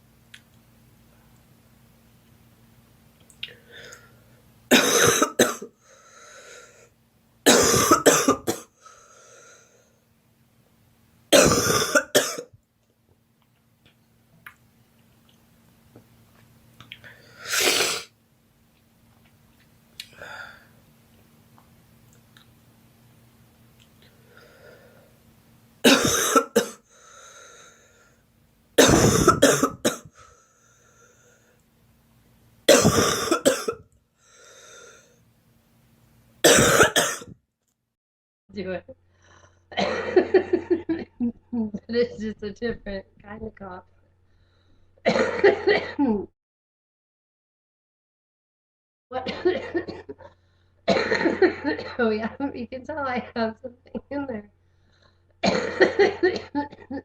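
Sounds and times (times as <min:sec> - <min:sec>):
girl coughing: 0:04.7 - 0:05.7, 0:07.5 - 0:08.7, 0:11.4 - 0:12.5, 0:25.9 - 0:26.8, 0:28.8 - 0:30.1, 0:32.7 - 0:33.8, 0:36.5 - 0:37.3, 0:39.8 - 0:40.2, 0:45.1 - 0:46.2, 0:49.2 - 0:50.3, 0:50.9 - 0:52.1, 0:55.4 - 0:57.0
girl breathing: 0:05.8 - 0:06.9, 0:08.8 - 0:10.0, 0:20.1 - 0:20.8, 0:26.9 - 0:28.2, 0:30.1 - 0:31.6, 0:34.2 - 0:35.2.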